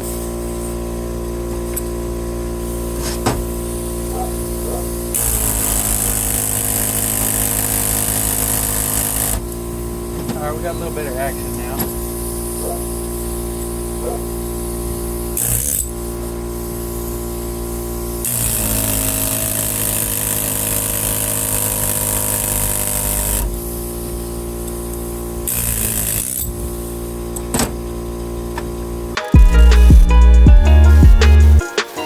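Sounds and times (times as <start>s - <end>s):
steady hum: 0.0s - 15.1s
pneumatic air hammer chiseling: 0.0s - 29.8s.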